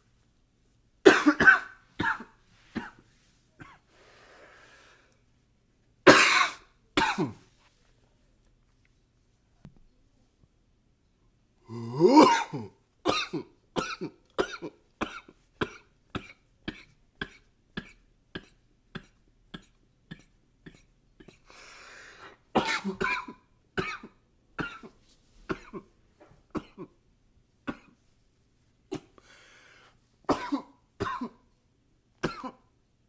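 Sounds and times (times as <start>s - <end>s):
man coughing: 1.1s - 3.0s, 6.1s - 7.4s, 11.7s - 21.5s, 22.6s - 24.9s, 30.3s - 31.4s
noisy breath: 3.8s - 5.2s, 21.4s - 22.5s, 29.2s - 30.1s.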